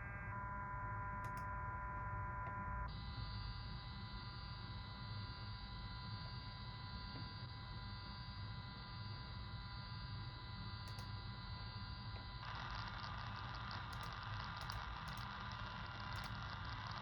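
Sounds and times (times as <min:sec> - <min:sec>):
radio static hiss: 0:12.4 - 0:17.0.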